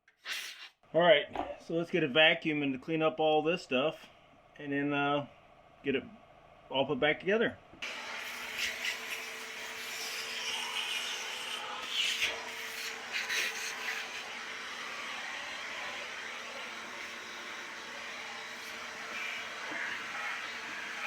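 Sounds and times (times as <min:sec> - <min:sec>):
vacuum cleaner running: 0:07.8 - 0:21.0.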